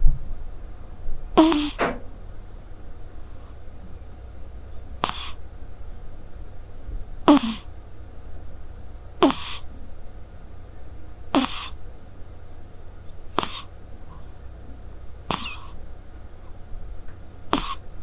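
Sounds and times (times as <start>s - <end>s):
cat snoring: 1.4s - 1.8s, 5.0s - 5.4s, 7.3s - 7.7s, 9.2s - 9.6s, 11.3s - 11.8s, 13.3s - 13.7s, 15.3s - 15.8s, 17.5s - 17.8s.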